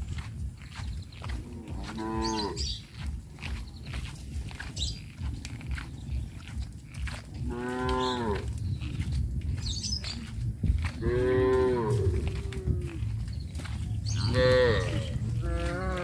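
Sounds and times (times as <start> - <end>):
cows mooing: 1.3 - 2.7, 7.4 - 8.6, 11.0 - 13.2, 14.1 - 16.0.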